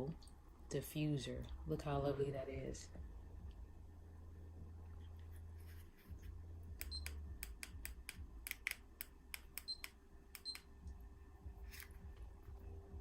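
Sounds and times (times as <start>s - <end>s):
faint low hum: 0.0s - 13.0s
small sharp clicks and taps: 6.8s - 11.0s.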